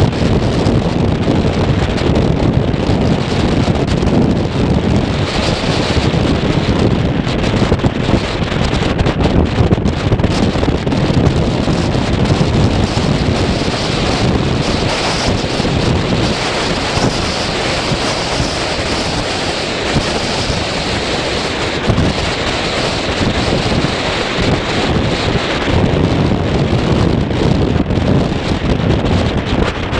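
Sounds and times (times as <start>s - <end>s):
wind buffeting microphone: 0.0s - 29.9s
rushing water hiss: 12.6s - 24.7s.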